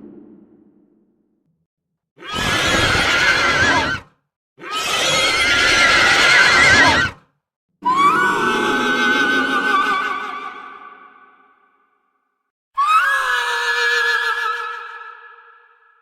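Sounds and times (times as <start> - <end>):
quivering horse whinnies: 2.2 - 7.2.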